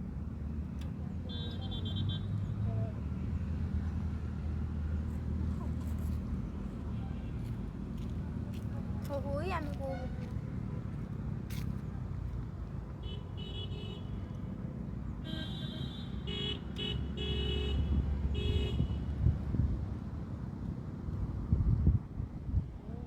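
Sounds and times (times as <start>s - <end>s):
road traffic rumble: 0.0s - 23.0s
vehicle horn honking: 1.3s - 2.4s, 13.0s - 14.2s, 15.2s - 19.1s.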